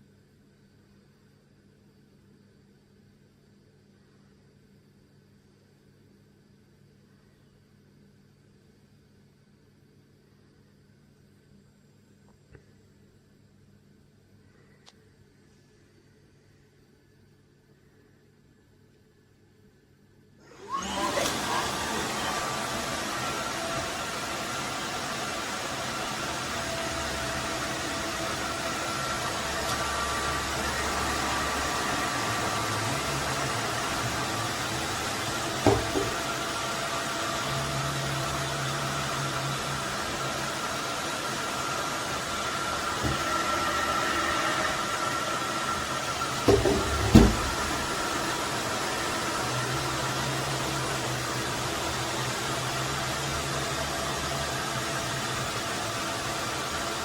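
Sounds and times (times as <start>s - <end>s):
vacuum mop running: 20.4s - 57.0s
knocks: 35.6s - 36.2s, 46.5s - 47.6s.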